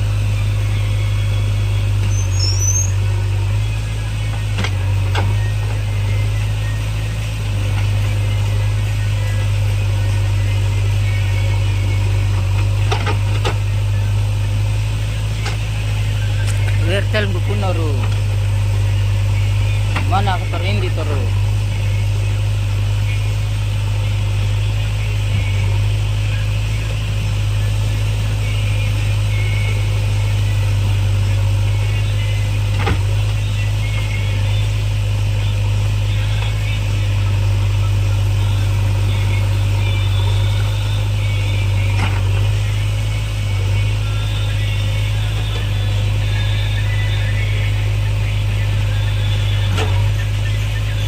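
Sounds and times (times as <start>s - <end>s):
diesel engine running: 0.0s - 51.0s.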